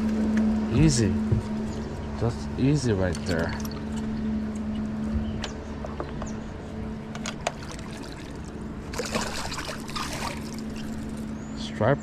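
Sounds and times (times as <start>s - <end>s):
steady low hum: 0.0s - 12.0s
water splashing against boat: 7.4s - 11.5s.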